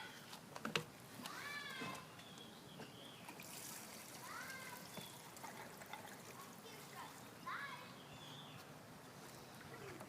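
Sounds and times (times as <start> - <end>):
gasoline trickling into fuel tank: 3.3 - 6.6.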